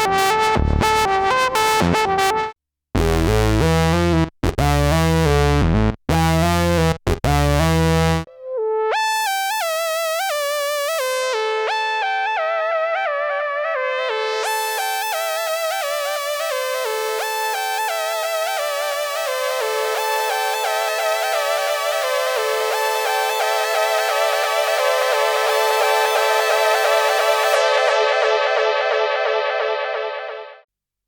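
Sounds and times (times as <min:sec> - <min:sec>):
deep synthesizer bass sequence: 0:00.0 - 0:02.2, 0:03.0 - 0:08.3
high synthesizer lead melody: 0:10.1 - 0:30.7.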